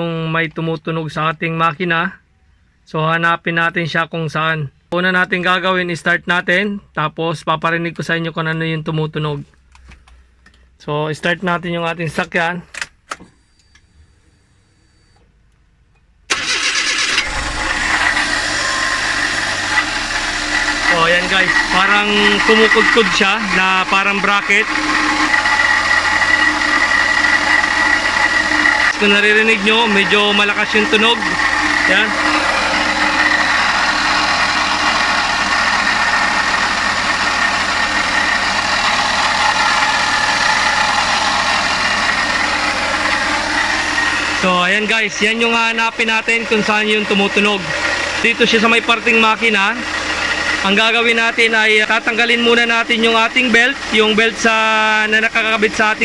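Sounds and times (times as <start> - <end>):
starter motor cranking: 13.1 - 15.3, 16.3 - 56.0
engine running with high whine: 13.2 - 15.4, 16.3 - 56.0
grating scraping noise: 17.0 - 56.0.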